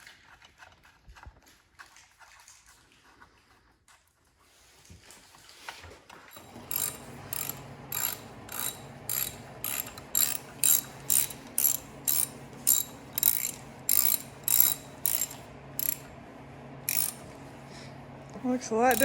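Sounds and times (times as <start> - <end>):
steady low hum: 6.4 - 19.0
ratchet wrench clicking: 6.7 - 16.1, 16.9 - 17.2.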